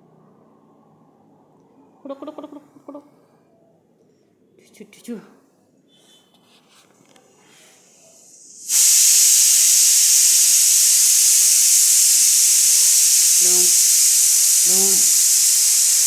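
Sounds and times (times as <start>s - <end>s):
loud steady hiss: 7.3s - 16.0s.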